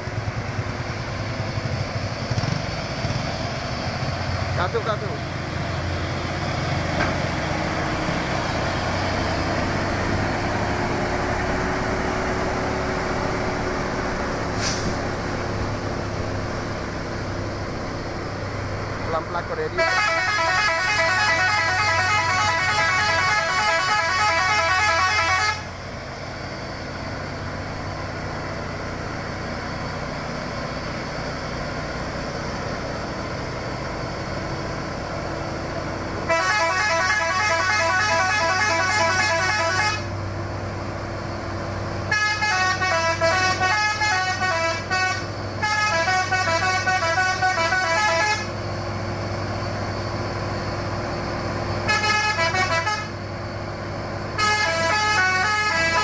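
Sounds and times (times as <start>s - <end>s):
truck engine running: 0.0s - 56.0s
musical truck horn: 19.7s - 25.7s, 36.2s - 40.2s, 42.1s - 48.6s, 51.8s - 53.2s, 54.3s - 56.0s.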